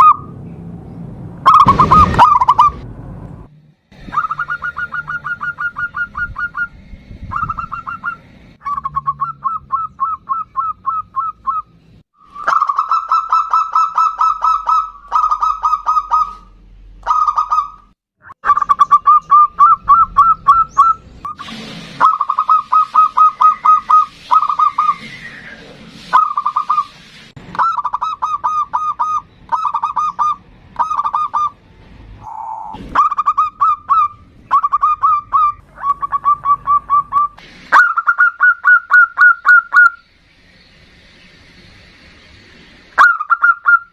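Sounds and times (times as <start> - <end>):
dove cooing: 1.5 - 2.8, 4.0 - 11.6, 32.2 - 39.9.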